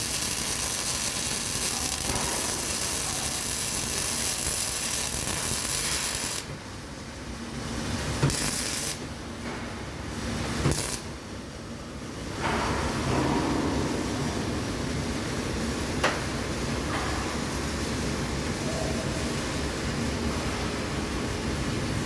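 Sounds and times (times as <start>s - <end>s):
welding arc hissing: 0.0s - 6.6s, 7.9s - 9.0s, 10.4s - 11.2s.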